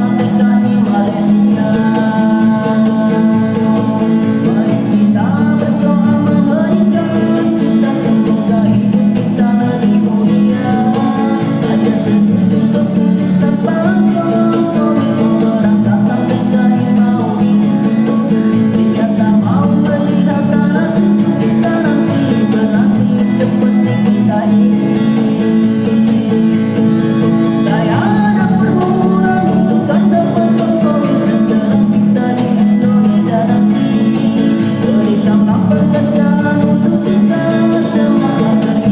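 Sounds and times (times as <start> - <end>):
guitar accompaniment: 0.0 - 38.9
man singing: 0.0 - 38.9.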